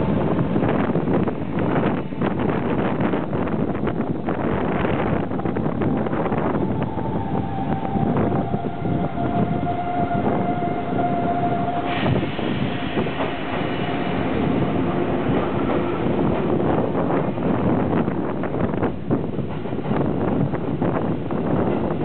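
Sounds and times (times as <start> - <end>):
electric train rumbling: 0.0 - 22.0
falling pitch train tone: 4.5 - 17.8.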